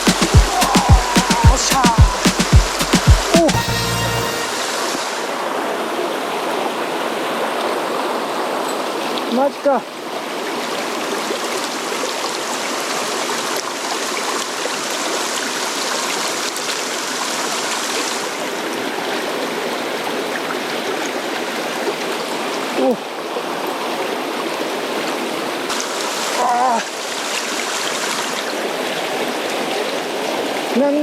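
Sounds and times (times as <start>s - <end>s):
short vocal sound: 0.0s - 3.9s
stream rushing over rocks: 0.0s - 31.0s.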